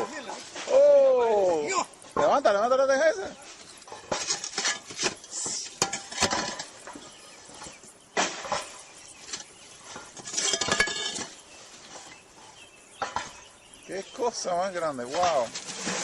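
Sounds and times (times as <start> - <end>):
roof tiles clinking and scraping: 1.5 - 13.4, 14.2 - 16.0.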